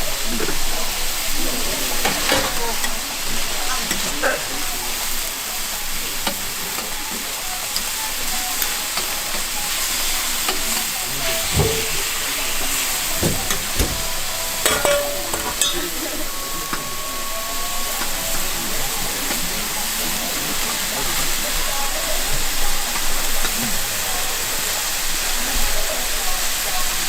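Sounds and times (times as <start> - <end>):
steak sizzling: 0.0 - 27.0.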